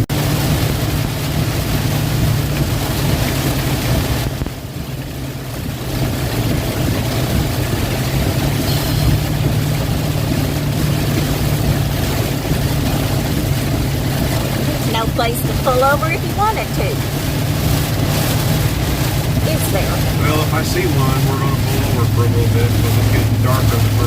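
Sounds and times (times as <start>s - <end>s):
rain and tyre spray hiss: 0.0s - 24.0s
vehicle engine and tyre drone: 0.0s - 24.0s.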